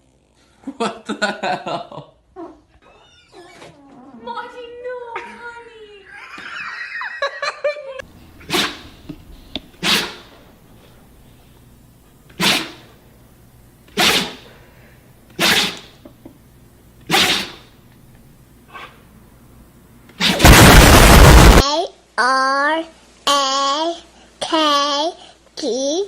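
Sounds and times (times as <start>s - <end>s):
dog sneezing: 8.4s - 9.0s, 9.7s - 10.4s, 12.3s - 13.0s, 13.9s - 14.6s, 15.3s - 16.0s, 17.0s - 17.7s, 20.2s - 20.5s.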